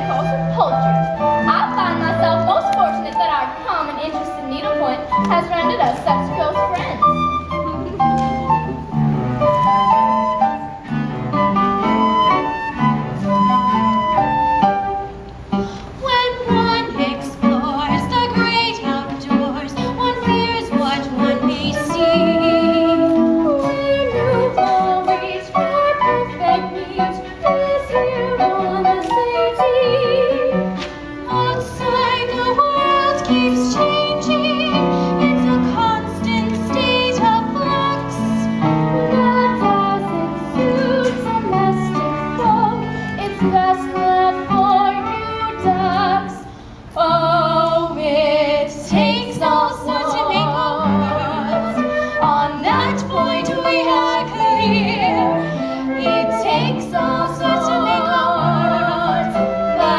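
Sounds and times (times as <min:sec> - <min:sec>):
instrumental accompaniment: 0:00.0 - 0:59.9
singing with vibrato: 0:31.3 - 0:59.9.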